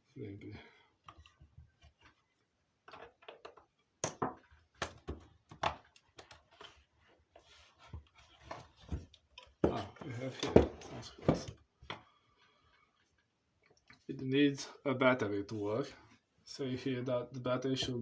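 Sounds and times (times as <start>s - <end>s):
clicks and knocks of handled parts: 2.8s - 6.9s.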